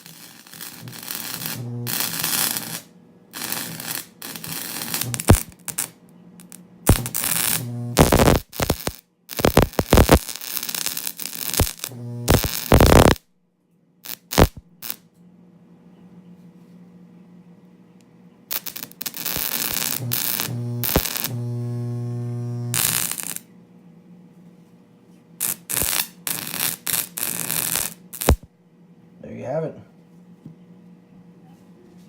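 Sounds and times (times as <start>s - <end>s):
electric arcing bursts: 0.0s - 13.2s, 14.1s - 15.0s, 18.5s - 23.4s, 25.4s - 28.5s
welder transformer humming: 0.0s - 13.2s, 14.1s - 15.0s, 18.5s - 23.5s, 25.4s - 28.5s.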